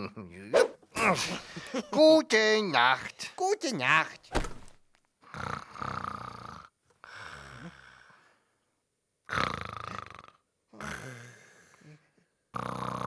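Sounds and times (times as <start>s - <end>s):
cartoon snoring: 5.3s - 8.2s, 9.3s - 13.0s.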